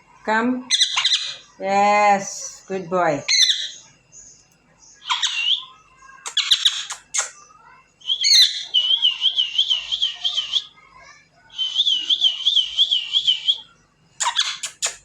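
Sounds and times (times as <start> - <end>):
parrot squawk: 0.7 - 1.5, 3.3 - 3.8, 5.0 - 7.4, 14.2 - 15.0
parrot warbling whistle: 5.0 - 5.8, 8.0 - 10.7
parrot whistling: 5.0 - 7.3, 8.0 - 10.7, 11.5 - 15.0.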